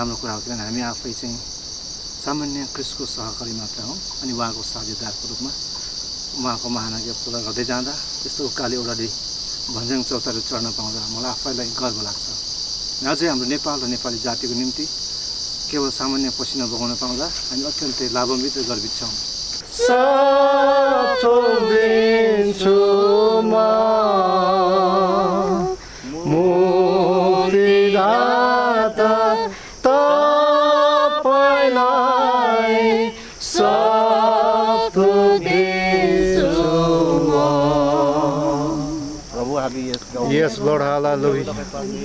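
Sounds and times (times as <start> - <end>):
person singing unaccompanied: 19.6 - 42.0.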